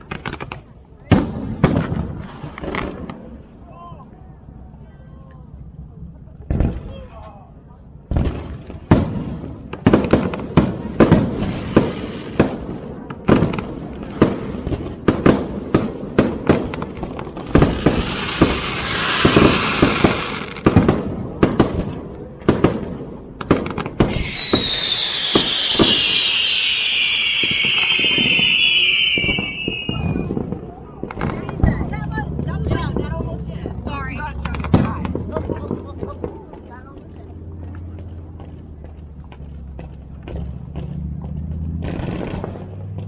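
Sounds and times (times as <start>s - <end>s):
firework crackle: 13.3s - 31.8s
firework shell bursts: 23.6s - 30.3s
high descending firework whistle: 24.0s - 30.5s.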